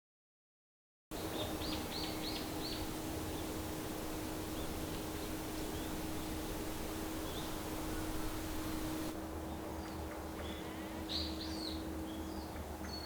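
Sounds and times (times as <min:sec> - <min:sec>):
low constant hum: 0:01.1 - 0:13.0
songbird chirping: 0:01.2 - 0:09.2.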